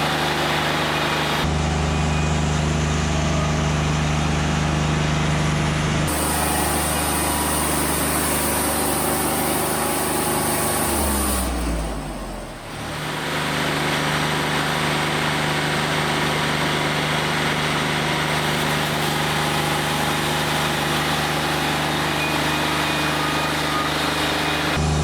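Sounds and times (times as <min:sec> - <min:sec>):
diesel engine drone: 0:00.0 - 0:25.0
band saw blade cutting log: 0:06.1 - 0:24.8.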